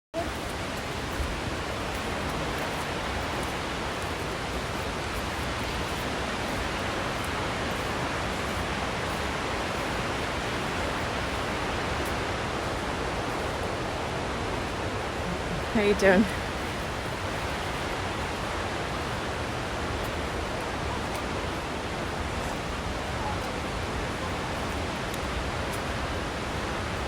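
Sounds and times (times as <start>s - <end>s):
waterfall rushing: 0.2s - 27.0s.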